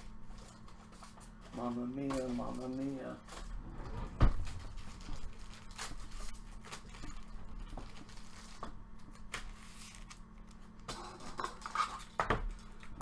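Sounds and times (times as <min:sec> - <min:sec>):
card packs rustling and crinkling: 0:00.0 - 0:03.5, 0:04.3 - 0:10.8
steady low hum: 0:00.0 - 0:13.0.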